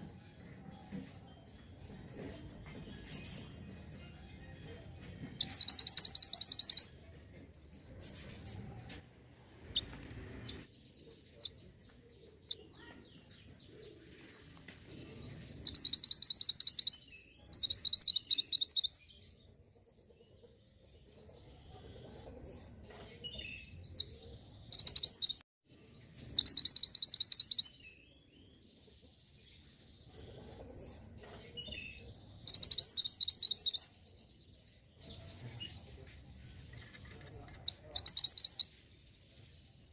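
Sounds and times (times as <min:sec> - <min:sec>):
soft bird chirps: 0:05.3 - 0:07.2, 0:07.8 - 0:19.5, 0:20.2 - 0:39.9
high-pitched bird trill: 0:05.4 - 0:07.0, 0:15.6 - 0:17.0, 0:26.4 - 0:27.7, 0:32.5 - 0:33.9, 0:38.0 - 0:38.7.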